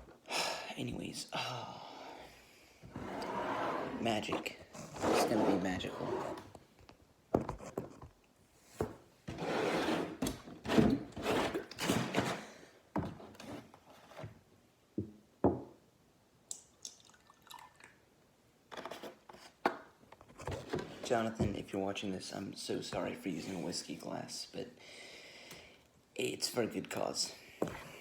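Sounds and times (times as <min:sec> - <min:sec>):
liquid pouring into glass: 0:16.8 - 0:18.0.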